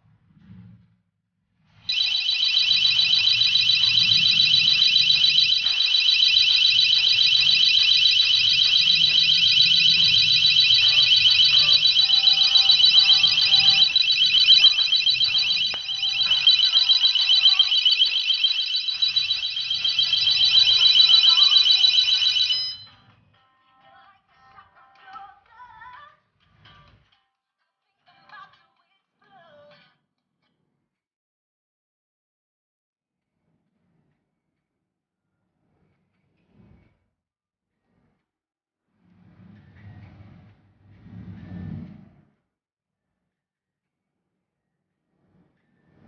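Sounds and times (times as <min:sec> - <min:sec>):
warbling electronic alarm siren: 0:01.9 - 0:22.9.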